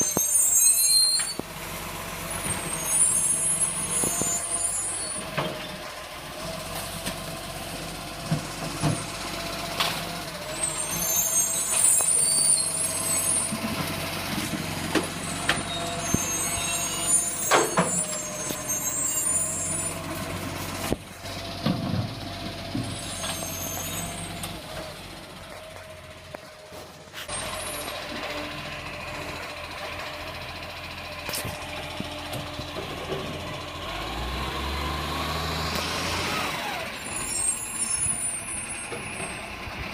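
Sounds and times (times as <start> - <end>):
high hissing squeal: 0.0 - 1.4, 2.6 - 5.2, 10.6 - 13.5, 15.2 - 20.0, 37.0 - 39.4
garbage truck engine running: 0.0 - 39.9.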